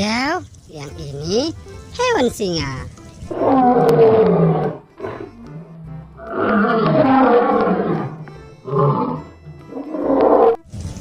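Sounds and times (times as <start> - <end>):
background music: 0.0 - 11.0
lion roaring: 3.3 - 10.6.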